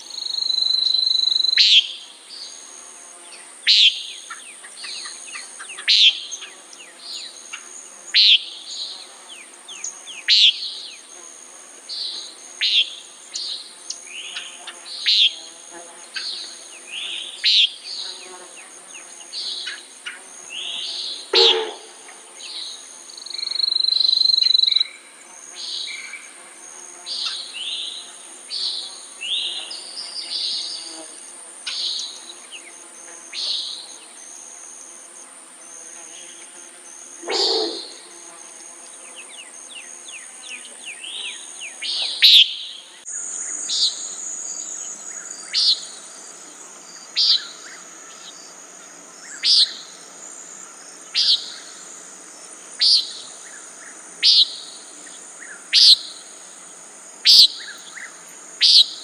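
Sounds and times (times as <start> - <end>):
soft bird calls: 21.3 - 21.9, 37.3 - 38.0
nighthawk nasal peent calls: 21.3 - 22.2, 37.2 - 38.0, 42.2 - 42.6, 57.3 - 57.7, 58.6 - 59.0.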